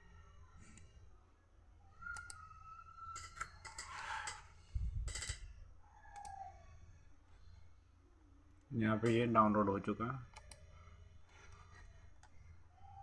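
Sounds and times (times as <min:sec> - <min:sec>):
computer clicks: 0:02.1 - 0:02.4, 0:06.1 - 0:06.4, 0:10.3 - 0:10.7.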